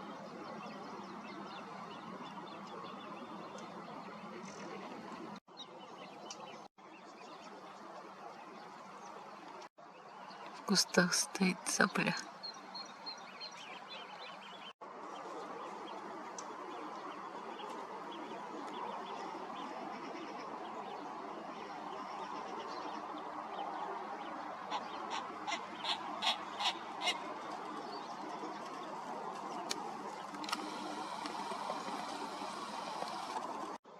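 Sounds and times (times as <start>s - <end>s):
waterfowl calling: 24.7s - 27.3s.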